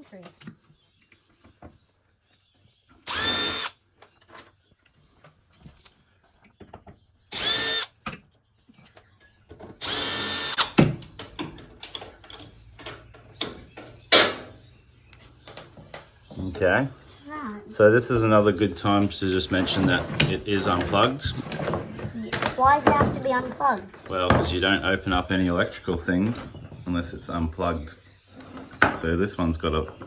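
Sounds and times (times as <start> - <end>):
electric screwdriver whirring: 3.0 - 3.8, 7.3 - 7.9, 9.8 - 10.8.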